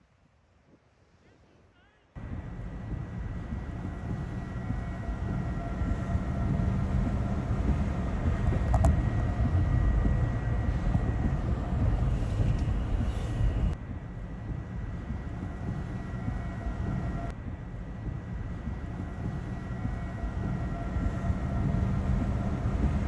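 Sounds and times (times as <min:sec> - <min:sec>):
tornado roar: 0:02.2 - 0:13.8, 0:18.1 - 0:23.0.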